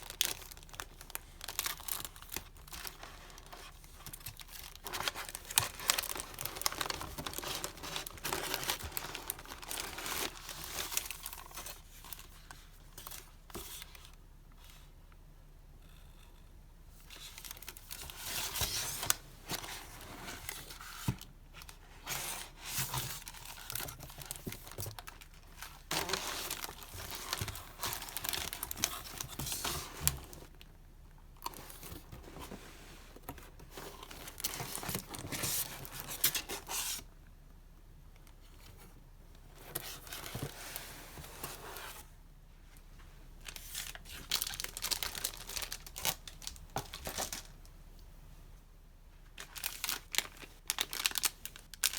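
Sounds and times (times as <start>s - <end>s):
packaging crinkling and tearing: 0.0s - 14.0s, 17.1s - 30.7s, 33.4s - 37.0s, 43.4s - 47.5s, 49.4s - 51.9s.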